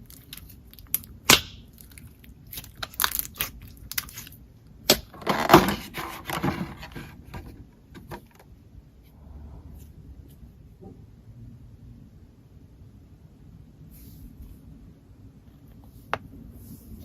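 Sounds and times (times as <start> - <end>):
slime crackling and popping: 0.0 - 5.1.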